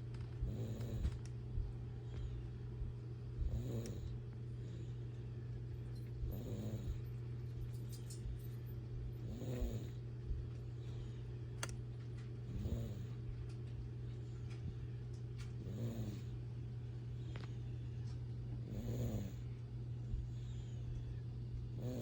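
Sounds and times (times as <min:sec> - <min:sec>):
steady low hum: 0:00.0 - 0:22.0
pet snoring: 0:00.4 - 0:01.2, 0:03.4 - 0:04.2, 0:06.2 - 0:07.1, 0:09.2 - 0:10.0, 0:12.4 - 0:13.2, 0:15.6 - 0:16.4, 0:18.6 - 0:19.5, 0:21.7 - 0:22.0.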